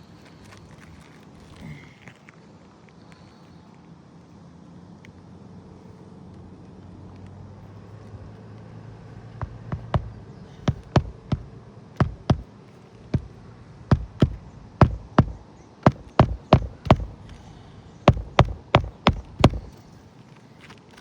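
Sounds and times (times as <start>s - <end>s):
low steady hum: 9.3s - 20.0s
hammer striking roofing nails: 9.4s - 12.5s, 13.2s - 19.8s.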